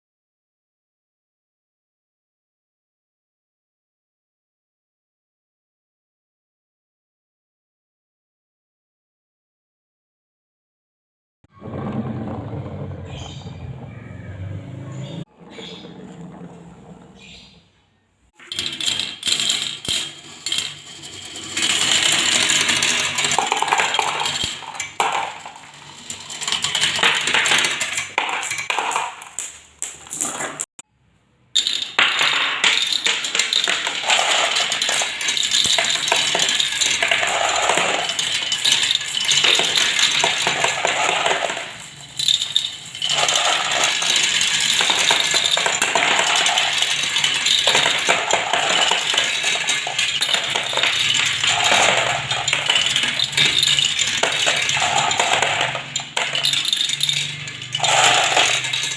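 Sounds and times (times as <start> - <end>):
marbles clattering down marble run: 11.5 - 17.2, 18.4 - 30.7, 31.6 - 58.9.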